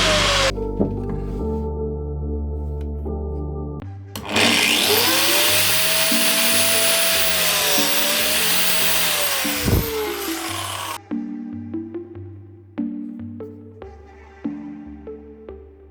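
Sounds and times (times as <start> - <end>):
electric drill boring wood: 0.0 - 0.5, 4.2 - 11.0
background music: 0.0 - 15.9.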